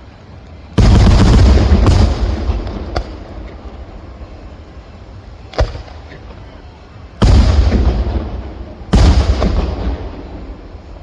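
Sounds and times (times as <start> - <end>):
fireworks booming: 0.7 - 11.0
sharp firework crack: 0.8 - 4.0, 5.4 - 6.2, 7.2 - 11.0.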